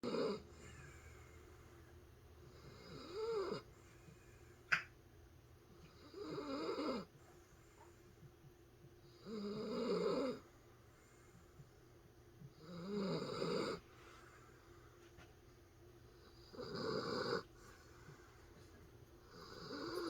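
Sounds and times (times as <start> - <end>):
dog snoring: 0.0 - 1.2, 2.4 - 3.8, 5.8 - 7.1, 9.0 - 10.6, 12.5 - 13.9, 16.1 - 18.1, 19.2 - 20.0.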